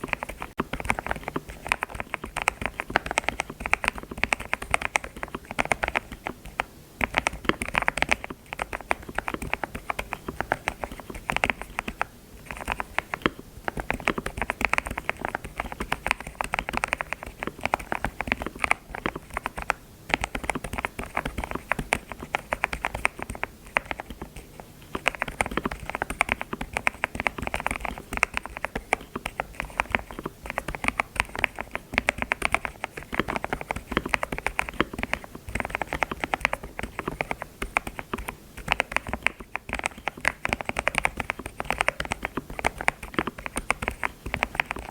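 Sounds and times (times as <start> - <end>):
keyboard typing: 0.0 - 44.9.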